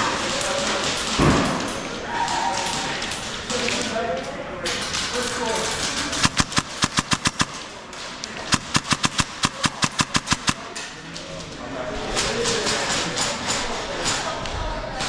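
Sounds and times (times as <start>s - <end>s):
airsoft guns firing: 4.9s - 10.9s.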